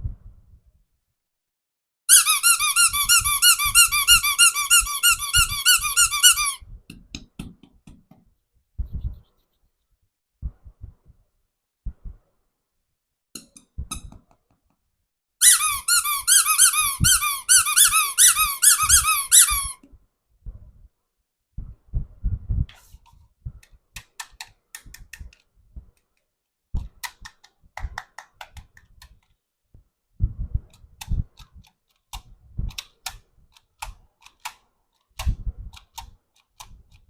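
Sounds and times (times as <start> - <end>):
squeaky toy squeaking: 2.1 - 6.6, 13.4 - 14.1, 15.4 - 19.8.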